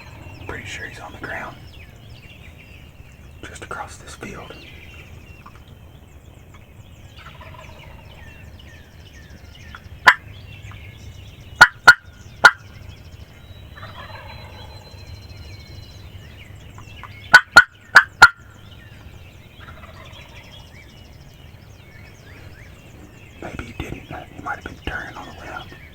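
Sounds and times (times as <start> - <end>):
distant turkeys gobbling: 0.0 - 25.9.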